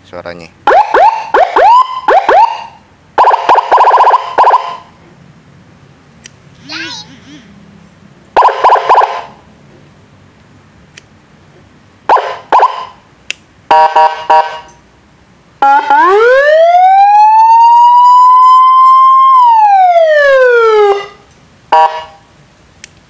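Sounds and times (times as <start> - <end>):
electronic siren chirps and wail: 0.7 - 4.9, 8.4 - 9.4, 12.1 - 13.0, 15.6 - 21.2.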